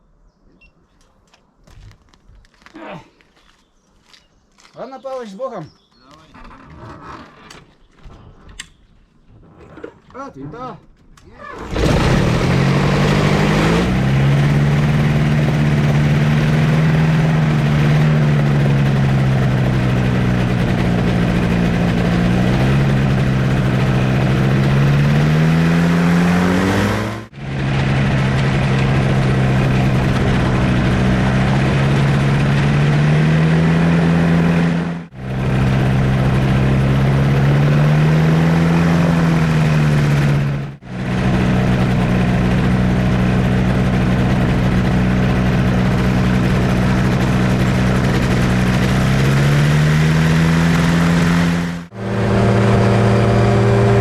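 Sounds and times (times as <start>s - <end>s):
loud machine humming: 11.6s - 54.0s.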